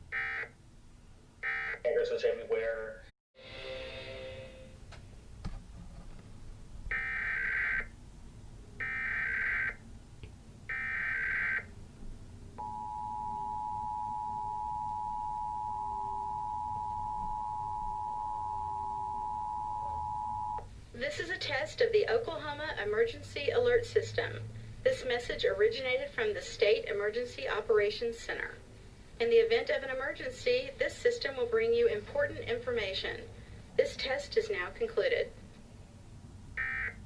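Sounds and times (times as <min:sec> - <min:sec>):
two-tone attention signal: 0:12.6 - 0:20.6.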